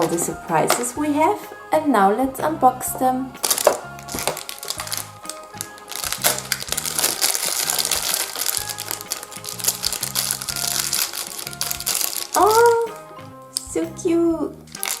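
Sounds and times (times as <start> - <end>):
wrappers crinkling: 0.0 - 1.2, 3.4 - 13.9, 14.6 - 15.0
background music with bass line: 0.0 - 15.0.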